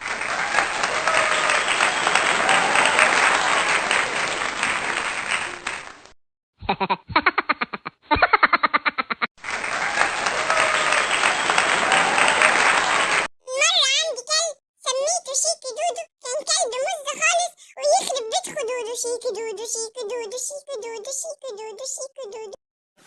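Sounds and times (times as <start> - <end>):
crowd applause and cheering: 0.0 - 6.2, 9.4 - 13.3.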